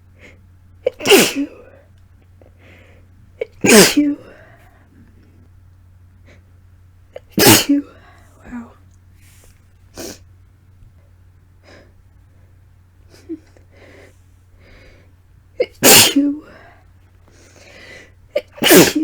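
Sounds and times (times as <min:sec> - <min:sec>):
woman sneezing: 0:00.8 - 0:01.8, 0:03.4 - 0:04.4, 0:07.2 - 0:08.8, 0:15.6 - 0:16.6, 0:18.4 - 0:19.0
woman sniffing: 0:09.3 - 0:10.3.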